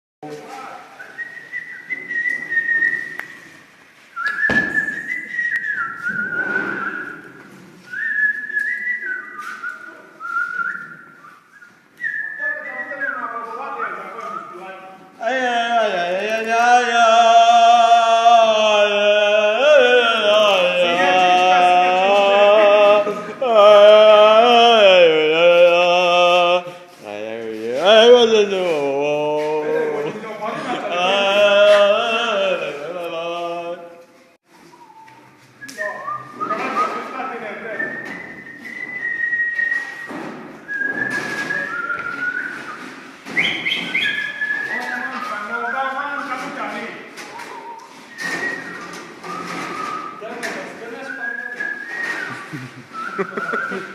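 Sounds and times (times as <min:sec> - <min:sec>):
whistling long held notes: 0:01.0 - 0:03.6, 0:04.2 - 0:13.3, 0:34.6 - 0:37.0, 0:37.8 - 0:45.3, 0:51.1 - 0:53.9
person droning chant: 0:15.3 - 0:34.0.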